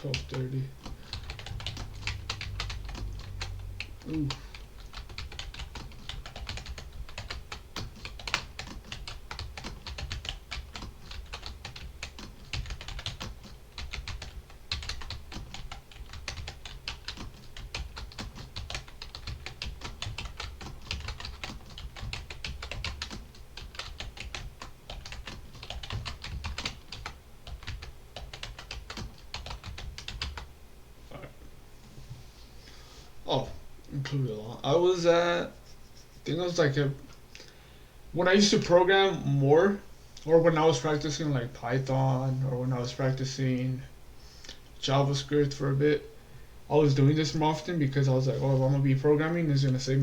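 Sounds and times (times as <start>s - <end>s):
fast typing on keyboard: 0.0s - 30.5s.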